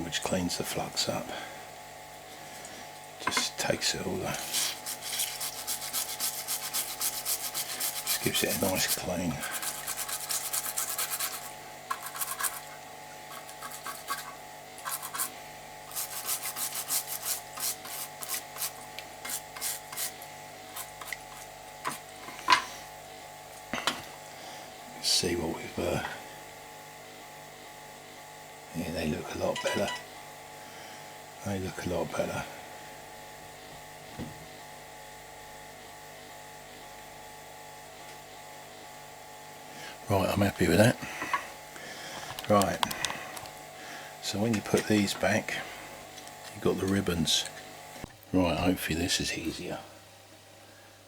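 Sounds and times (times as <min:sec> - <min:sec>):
electrical hum with buzz: 0:00.0 - 0:51.0
rubbing strokes on circuit board: 0:04.4 - 0:12.7, 0:13.3 - 0:22.1.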